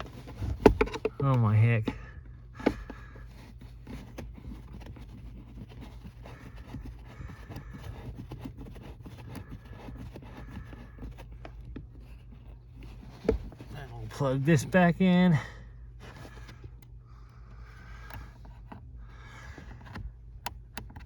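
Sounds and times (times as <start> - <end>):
clicks and scrapes of parts handled: 0.0 - 14.0
steady low hum: 0.0 - 21.0.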